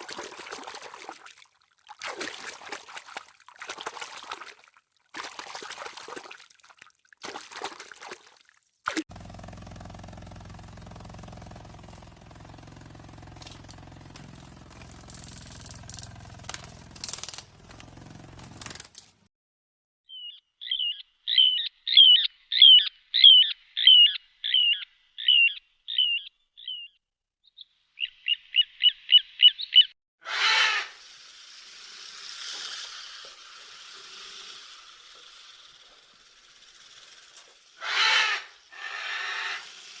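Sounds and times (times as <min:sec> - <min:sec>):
animal high chirping calls: 0:20.1 - 0:26.9, 0:28.6 - 0:31.0, 0:37.8 - 0:39.9
loud harsh animal calls: 0:30.2 - 0:40.0
rough hiss: 0:30.3 - 0:40.0.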